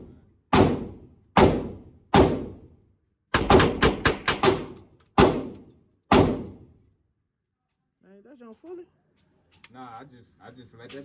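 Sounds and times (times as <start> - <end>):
gunshots echoing indoors: 0.0 - 2.7, 3.3 - 6.8.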